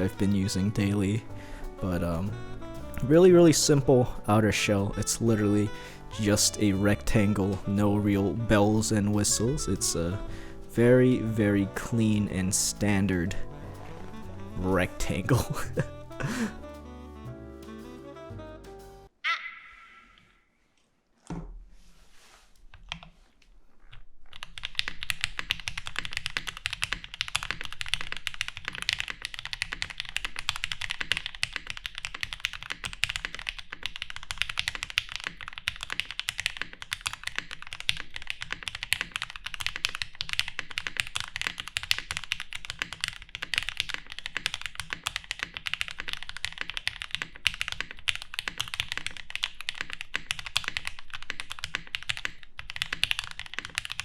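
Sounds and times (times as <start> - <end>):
typing on mechanical keyboard: 23.9 - 54.0.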